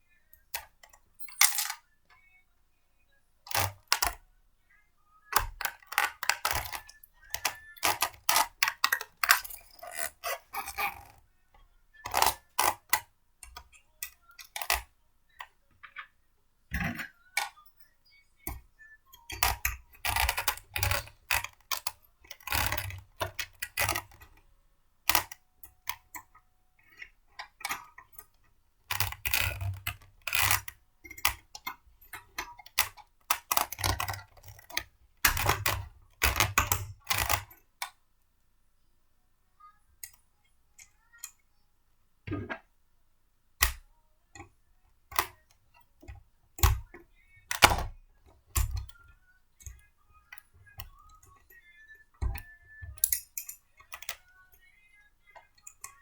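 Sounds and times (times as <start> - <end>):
blender parts clicking and rattling: 0.6 - 1.8, 5.4 - 11.2, 19.3 - 24.4.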